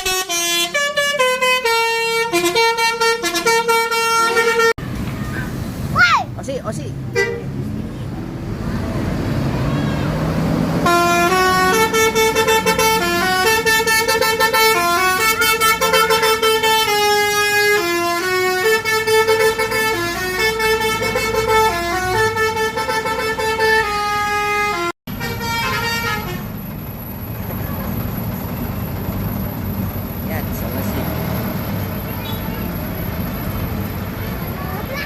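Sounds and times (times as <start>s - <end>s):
bus multi-tone horn melody: 0.0s - 4.8s, 7.1s - 7.6s, 9.9s - 26.8s, 32.1s - 33.2s.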